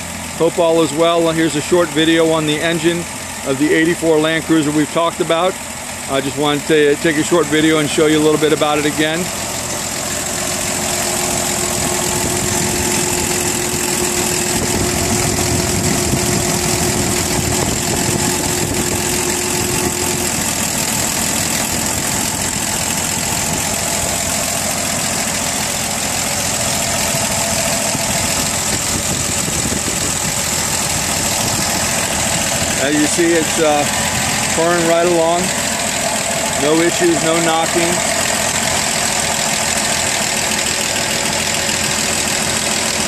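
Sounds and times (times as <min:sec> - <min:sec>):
car engine idling: 0:00.0 - 0:43.0
steady whine: 0:07.0 - 0:43.0.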